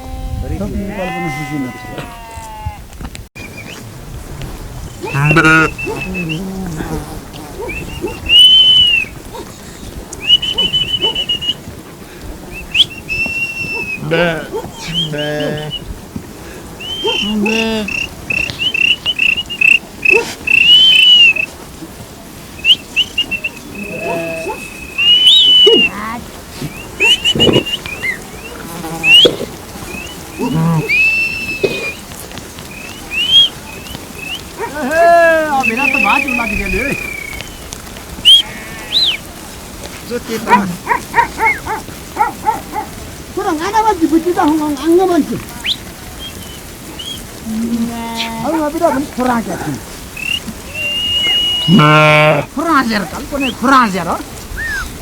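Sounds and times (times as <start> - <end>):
sheep bleating: 0.0 - 2.8, 5.0 - 8.2, 14.0 - 15.8, 17.0 - 18.1, 23.6 - 24.7, 28.5 - 32.0, 34.6 - 36.8, 38.3 - 39.2, 47.4 - 49.1, 50.9 - 53.2
herder whistling: 4.9 - 9.5, 10.1 - 11.8, 12.4 - 16.0, 16.6 - 21.6, 22.6 - 39.3, 40.5 - 42.9, 45.5 - 55.0
person whistling: 12.8 - 14.0, 24.6 - 25.9, 30.9 - 32.0, 50.2 - 51.8.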